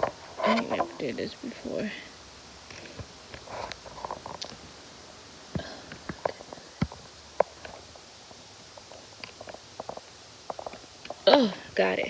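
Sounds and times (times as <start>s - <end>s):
soft handling noises: 2.6s - 11.2s.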